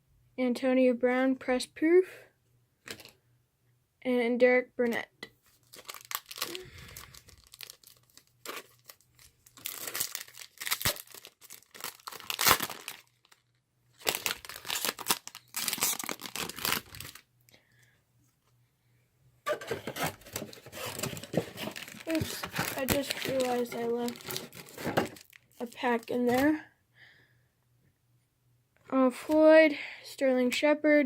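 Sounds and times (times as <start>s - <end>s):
foil wrappers crinkling and tearing: 5.6s - 17.2s, 19.5s - 26.6s.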